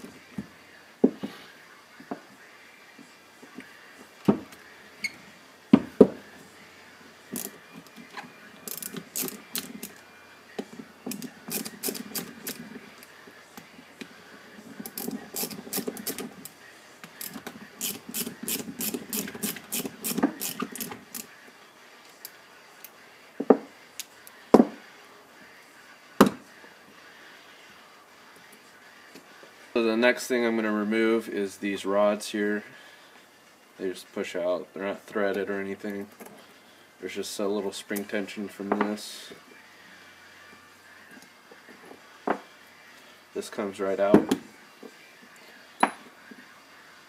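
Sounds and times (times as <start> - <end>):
socket ratchet clicking: 8.7 - 9.9, 11.1 - 12.6, 14.9 - 16.2, 17.2 - 21.3.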